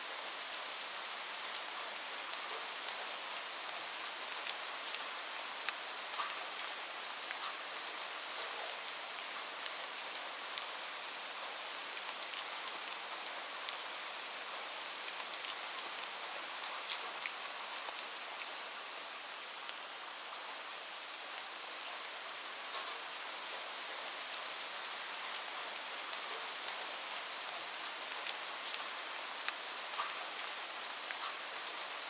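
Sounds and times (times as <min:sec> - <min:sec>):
light rain falling: 0:00.0 - 0:32.0
raindrops pattering on a surface: 0:00.1 - 0:21.1, 0:21.8 - 0:32.0.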